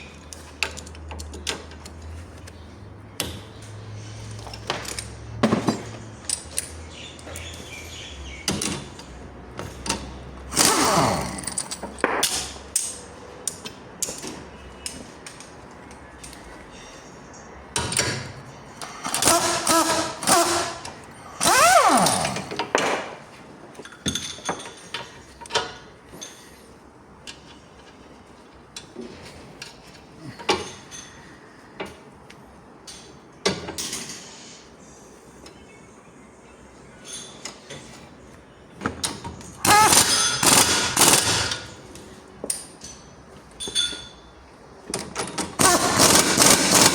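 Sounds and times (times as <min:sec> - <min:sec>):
power tool whirring: 0:10.5 - 0:11.7, 0:19.0 - 0:22.6, 0:39.6 - 0:41.7, 0:45.6 - 0:46.9.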